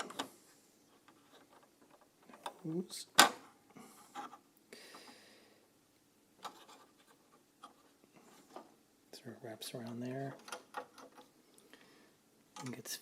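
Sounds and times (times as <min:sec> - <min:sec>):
faint plastic scraping: 0:06.4 - 0:08.8.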